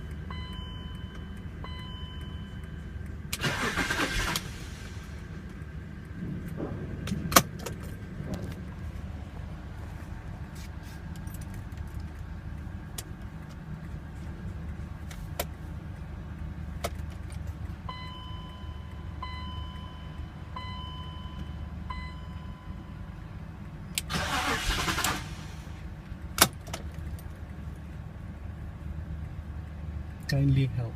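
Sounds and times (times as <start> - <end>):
dashboard warning chime: 0.0 - 3.8, 17.9 - 23.3
low rumble: 4.2 - 15.0.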